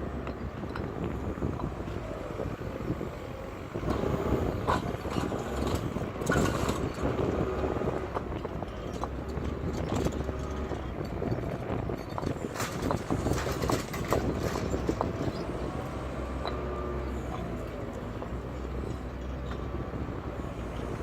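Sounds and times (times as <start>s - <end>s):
paving stones clacking: 3.8s - 19.7s.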